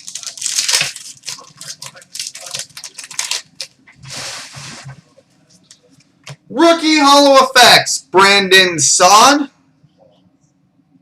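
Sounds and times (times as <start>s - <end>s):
brushing rustle of cards: 4.0s - 5.1s.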